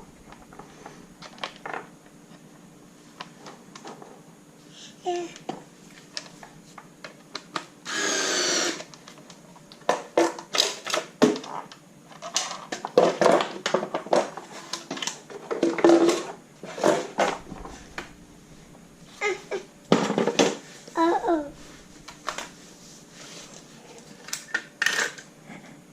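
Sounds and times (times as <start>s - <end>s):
electric screwdriver motor: 7.8s - 8.9s.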